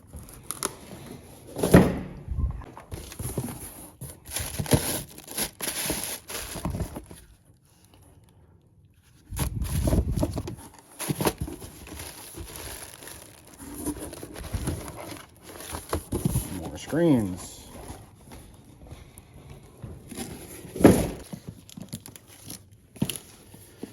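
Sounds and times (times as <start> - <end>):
plastic packaging crinkling: 2.9 - 7.4, 9.5 - 17.4, 21.2 - 23.9.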